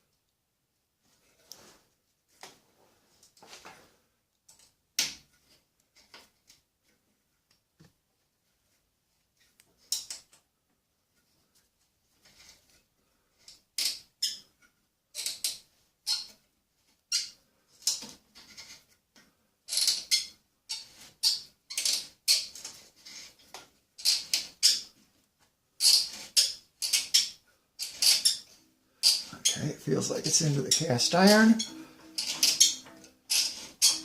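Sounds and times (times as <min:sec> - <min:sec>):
tap squeaking in metal: 0:25.8 - 0:34.0.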